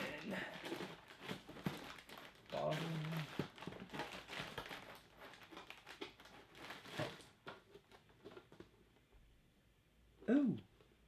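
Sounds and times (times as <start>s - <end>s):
plastic and cardboard crinkling: 0.0s - 8.8s.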